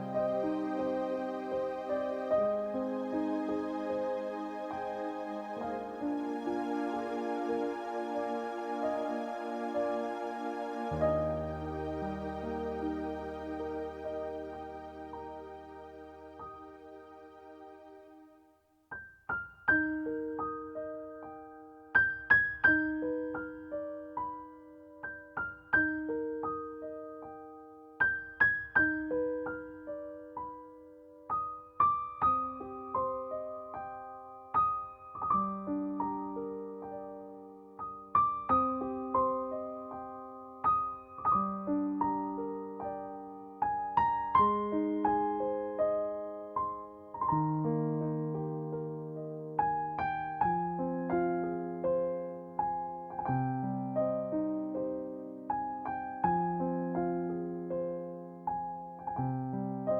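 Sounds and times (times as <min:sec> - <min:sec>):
gentle piano chords: 0:00.0 - 0:59.9.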